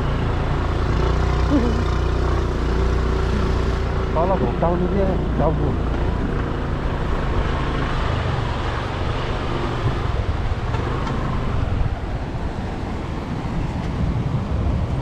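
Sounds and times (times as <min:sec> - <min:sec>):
motorbike engine running: 0:00.0 - 0:08.4
road noise: 0:00.0 - 0:15.0
wind on microphone: 0:11.4 - 0:15.0.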